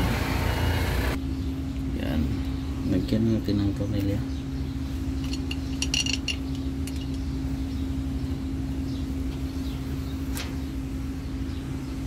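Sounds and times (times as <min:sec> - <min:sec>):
machinery droning: 0:00.0 - 0:03.6.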